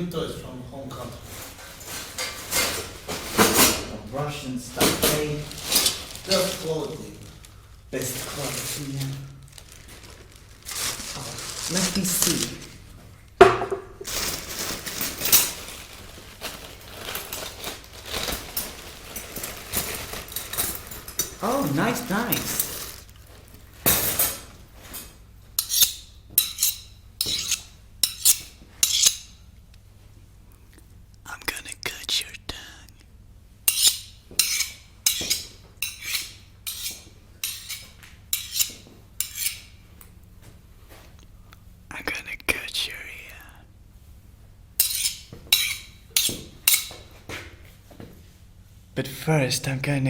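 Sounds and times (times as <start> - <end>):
metal tools clinking: 14.1 - 15.7, 17.1 - 23.0
knife blade scraping metal: 25.6 - 29.4, 33.7 - 39.7, 44.8 - 46.9.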